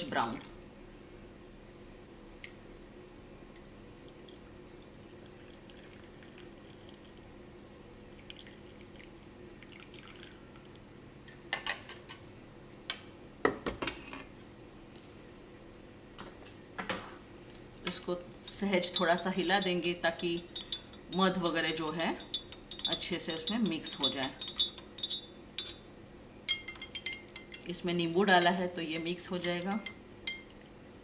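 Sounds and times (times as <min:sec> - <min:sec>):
liquid sounds: 0:04.0 - 0:07.3, 0:08.1 - 0:10.8
dishes and utensil clinking: 0:18.5 - 0:25.8, 0:26.5 - 0:27.7.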